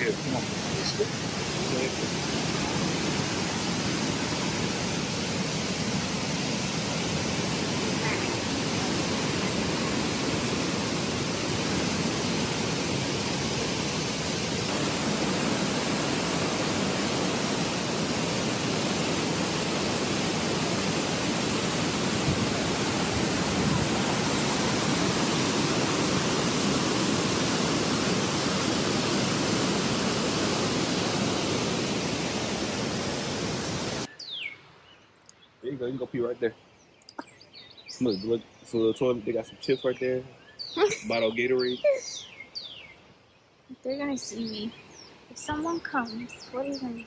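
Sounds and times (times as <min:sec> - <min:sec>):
waterfall rushing: 0:00.0 - 0:34.1.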